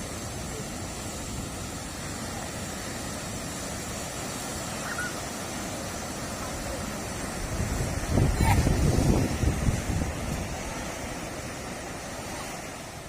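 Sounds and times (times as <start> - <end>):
ocean surf: 0.0 - 13.0
wind on microphone: 6.6 - 13.0.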